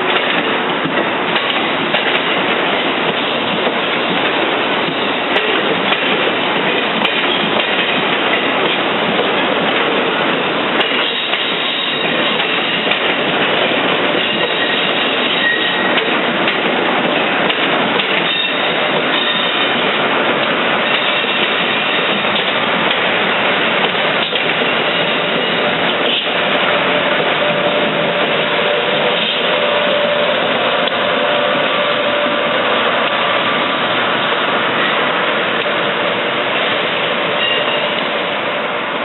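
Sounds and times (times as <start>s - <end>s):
train wheels rushing on rails: 0.0s - 39.0s
high wheel squeal: 11.0s - 12.8s, 14.2s - 16.0s, 18.2s - 19.7s, 37.3s - 38.1s.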